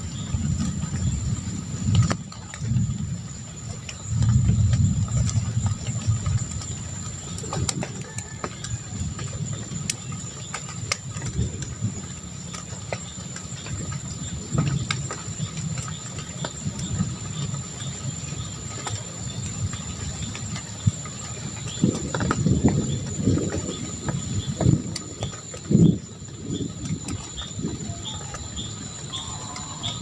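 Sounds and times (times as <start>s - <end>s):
low rumble: 0.0s - 30.0s.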